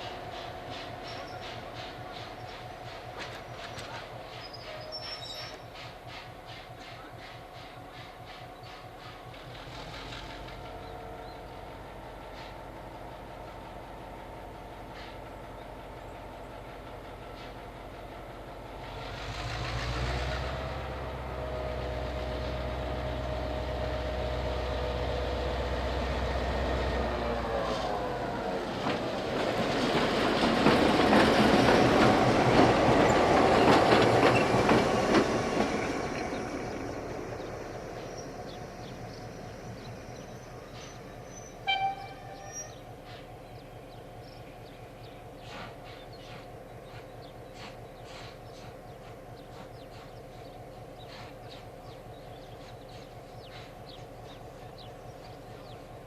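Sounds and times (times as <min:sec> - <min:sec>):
train wheels clattering: 0:00.0 - 0:12.8, 0:28.7 - 0:37.4, 0:45.4 - 0:55.8
train low hum: 0:00.0 - 0:56.0.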